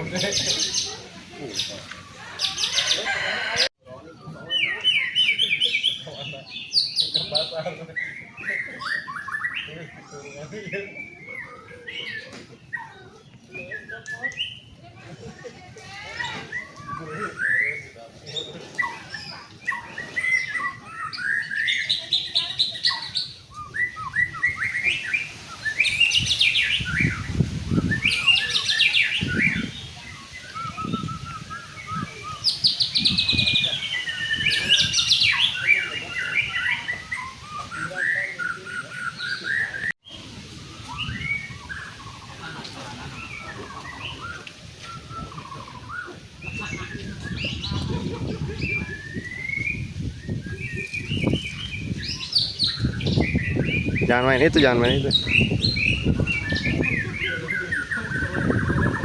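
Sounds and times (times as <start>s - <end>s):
songbird singing whistles and trills: 16.2s - 42.4s, 43.2s - 54.1s, 54.9s - 59.0s.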